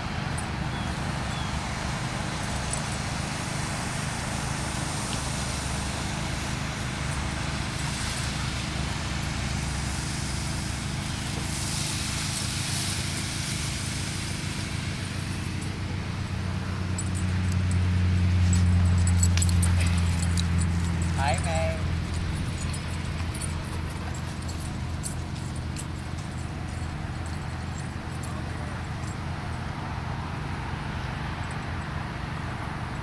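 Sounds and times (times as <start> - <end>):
low mechanical hum and rumble: 0.0 - 33.0
background hiss: 0.1 - 29.8.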